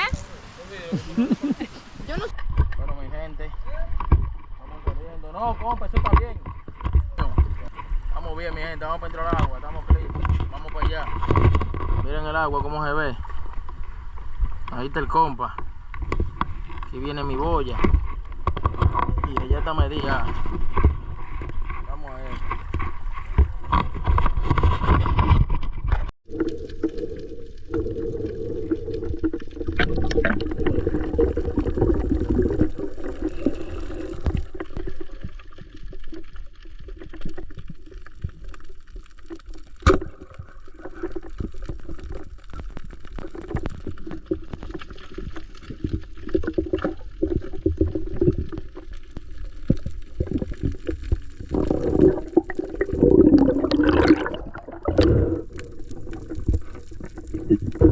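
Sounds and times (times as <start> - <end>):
water gurgling underwater: 22.4 - 57.9.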